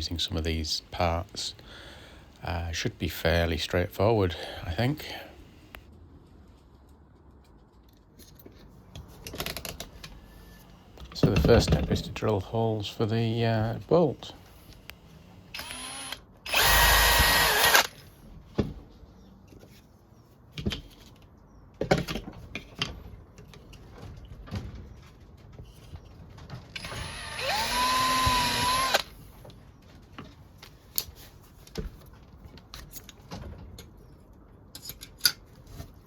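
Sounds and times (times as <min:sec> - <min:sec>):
power drill whine: 0:15.6 - 0:17.9, 0:26.8 - 0:29.1.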